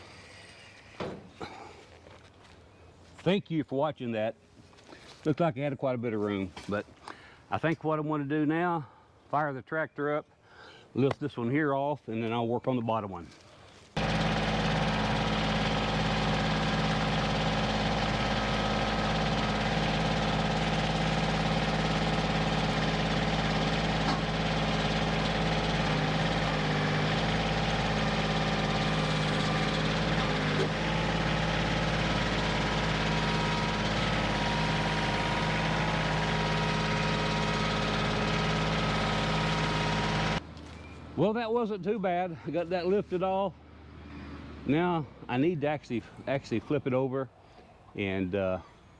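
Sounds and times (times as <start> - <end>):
tractor diesel engine running: 14.0 - 41.3.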